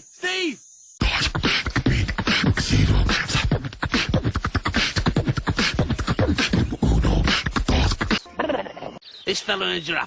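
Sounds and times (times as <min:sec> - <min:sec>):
person beatboxing: 0:01.0 - 0:08.2.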